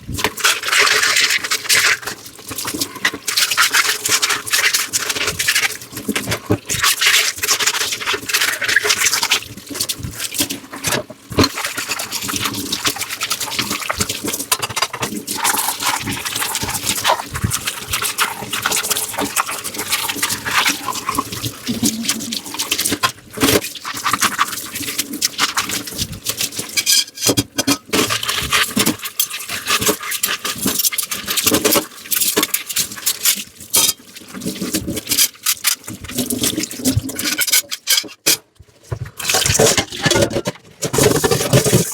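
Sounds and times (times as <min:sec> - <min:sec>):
running water: 0:00.1 - 0:27.0
scrubbing dishes: 0:10.2 - 0:25.8, 0:39.1 - 0:41.9
dishware clicking and knocking: 0:39.8 - 0:40.5.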